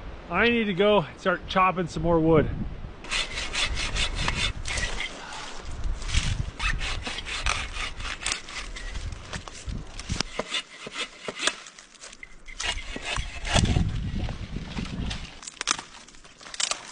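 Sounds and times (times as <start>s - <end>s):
wind buffeting microphone: 1.4s - 10.4s, 12.4s - 15.4s
hand saw rasping through wood: 3.0s - 5.2s, 6.2s - 9.0s, 10.0s - 11.9s, 12.5s - 13.9s.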